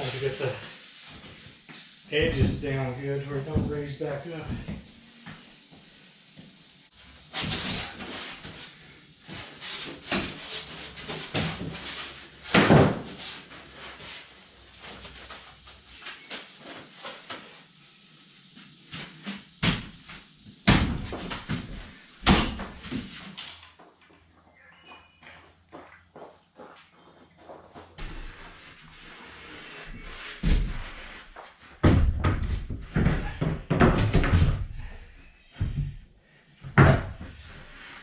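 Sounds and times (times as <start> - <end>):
knocks and thumps: 3.5 - 4.8, 31.8 - 34.7.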